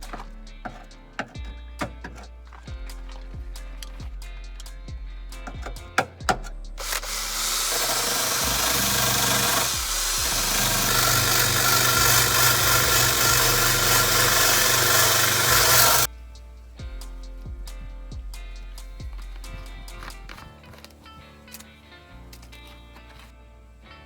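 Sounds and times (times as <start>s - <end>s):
power grinder on sheet metal: 6.8s - 16.1s.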